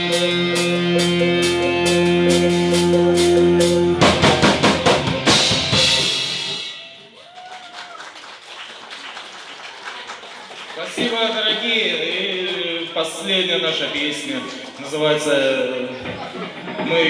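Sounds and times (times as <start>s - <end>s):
drums: 0.0s - 7.9s, 13.7s - 17.0s
drum fill: 0.9s - 6.9s.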